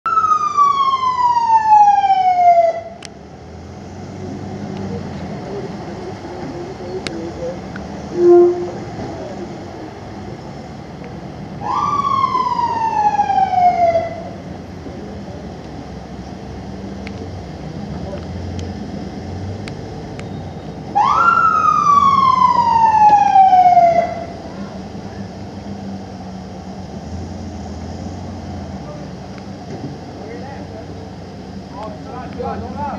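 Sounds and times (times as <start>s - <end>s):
ambulance siren bursts: 0.1s - 3.1s, 11.6s - 14.4s, 20.6s - 24.4s
traffic noise: 0.1s - 32.9s.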